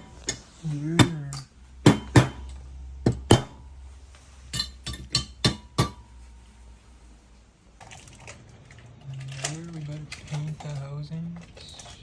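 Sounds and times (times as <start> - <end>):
faint rattling: 7.8 - 12.0.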